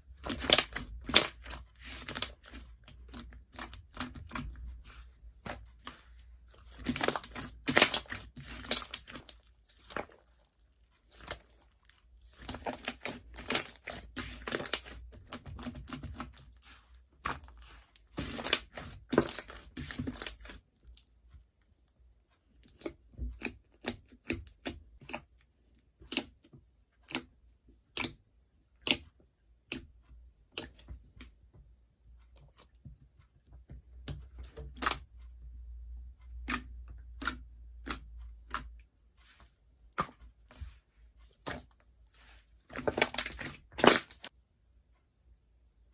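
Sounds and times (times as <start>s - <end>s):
slime crackling and popping: 6.7s - 16.4s.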